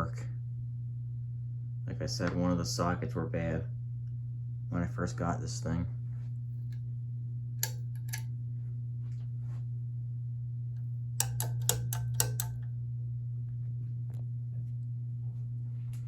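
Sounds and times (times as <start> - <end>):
ceiling fan electrical hum: 0.0 - 16.0
sharp clicks: 7.6 - 8.2, 11.2 - 12.7.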